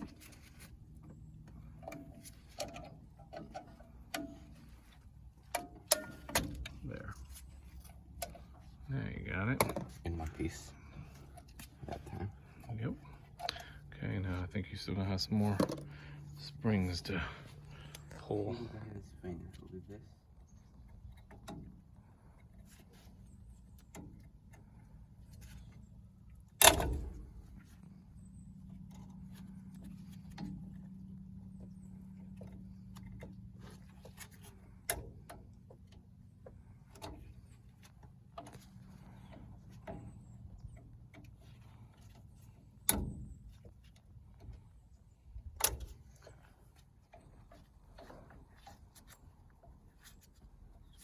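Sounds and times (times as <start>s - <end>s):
metal parts clicking and clanking: 0.0s - 14.0s, 20.8s - 51.0s
faint low hum: 0.0s - 51.0s.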